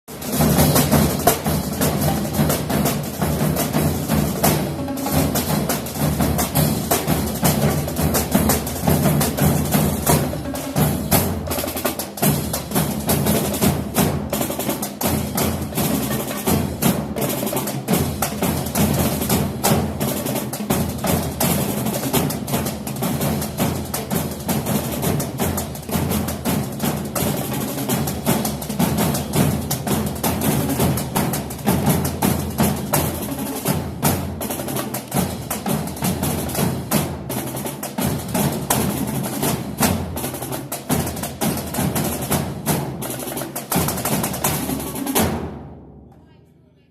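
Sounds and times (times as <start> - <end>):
dry clicking percussion: 0.1 - 45.4.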